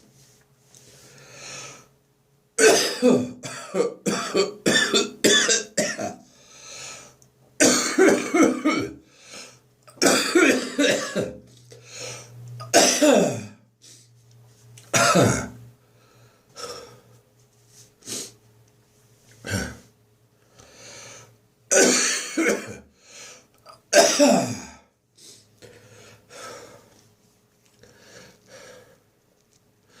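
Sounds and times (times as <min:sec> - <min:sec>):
person dry coughing: 0:02.6 - 0:06.2, 0:07.6 - 0:09.0, 0:09.9 - 0:11.4, 0:12.6 - 0:13.6, 0:14.9 - 0:15.6, 0:21.7 - 0:22.9, 0:23.7 - 0:24.8.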